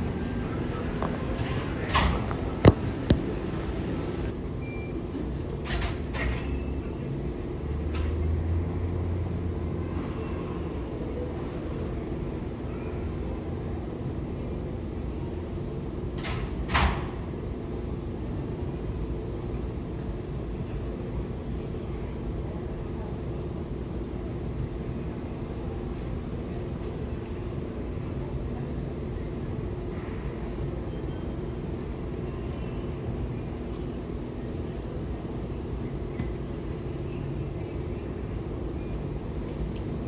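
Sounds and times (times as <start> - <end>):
low rumble with faint hum: 0.0 - 4.3.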